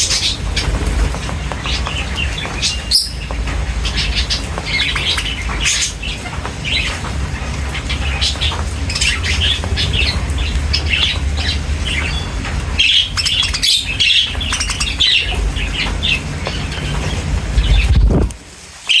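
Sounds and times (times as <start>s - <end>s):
budgerigars chirping: 0.0s - 18.3s
steady low rumble: 0.0s - 18.4s.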